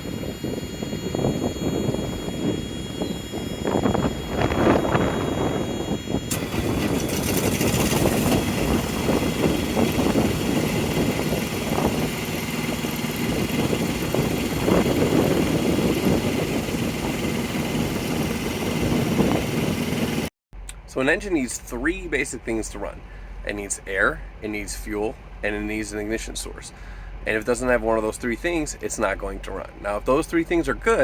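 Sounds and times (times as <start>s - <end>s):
diesel engine idling: 5.3s - 20.3s.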